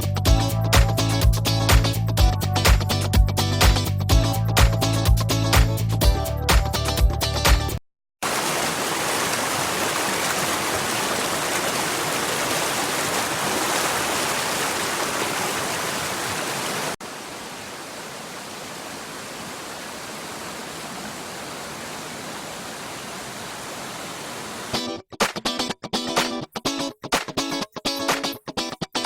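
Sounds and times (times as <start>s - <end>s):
stream water rushing over rocks: 8.2s - 24.8s.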